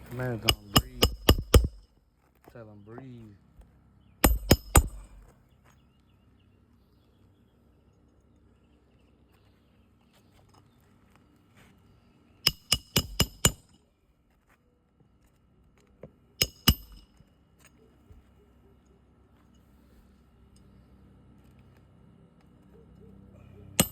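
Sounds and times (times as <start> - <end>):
hammer striking nails: 0.3 - 1.9, 4.2 - 5.3, 12.5 - 13.8, 16.4 - 17.2.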